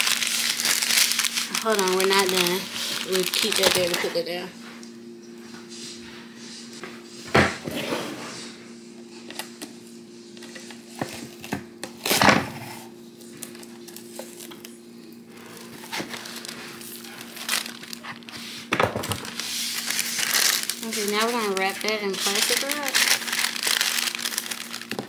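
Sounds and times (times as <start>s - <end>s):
kitchen wrap crinkling: 0.0s - 4.6s, 13.2s - 25.0s
steady low hum: 0.0s - 25.0s.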